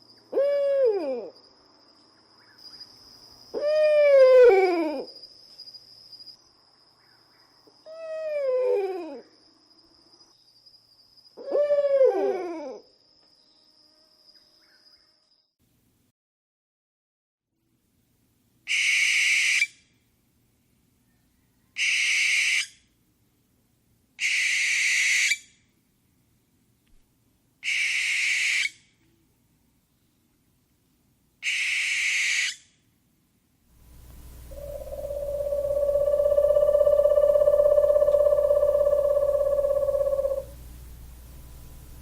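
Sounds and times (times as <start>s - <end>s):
owl screeching: 18.7s - 19.7s, 21.8s - 22.7s, 24.2s - 25.4s, 27.6s - 28.8s, 31.4s - 32.6s, 34.2s - 40.6s
steady pitched tone: 33.8s - 42.0s.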